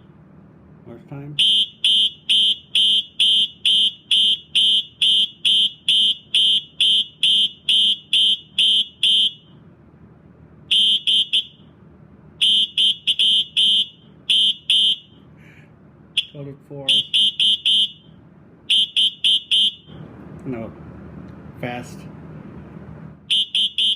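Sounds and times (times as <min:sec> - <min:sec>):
fire alarm horn beeping: 0:01.4 - 0:09.6, 0:10.7 - 0:11.8, 0:12.4 - 0:15.2, 0:16.2 - 0:20.0, 0:23.3 - 0:23.9.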